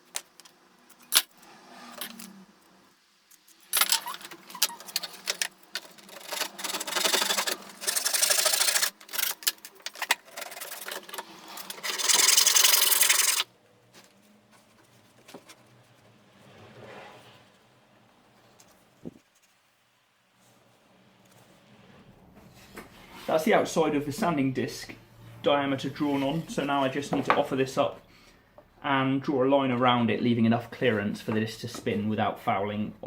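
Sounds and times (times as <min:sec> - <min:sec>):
rubbing and scraping on timber: 0:03.7 - 0:13.5.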